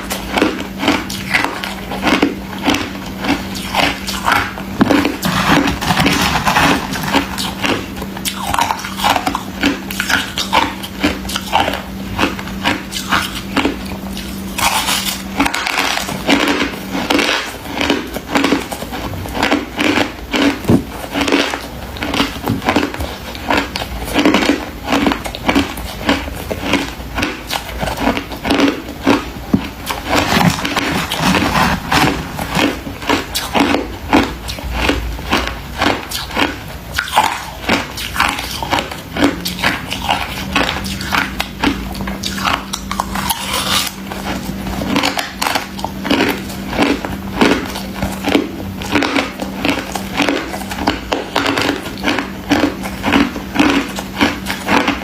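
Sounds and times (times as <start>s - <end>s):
chewing crunchy ice: 0.0s - 55.0s
steady low hum: 0.0s - 55.0s.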